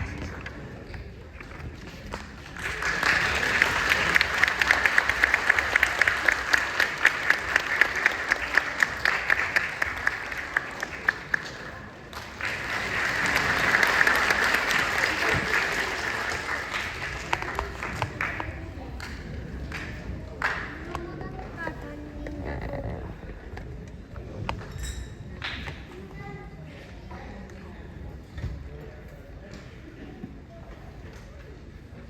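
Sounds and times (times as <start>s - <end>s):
audience applauding: 2.1s - 21.0s.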